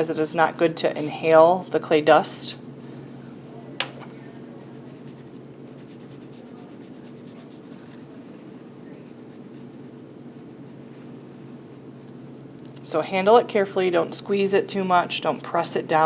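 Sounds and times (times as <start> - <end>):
electrical hum: 0.0 - 16.0
scratchy rubbing of dry clay: 4.6 - 11.1.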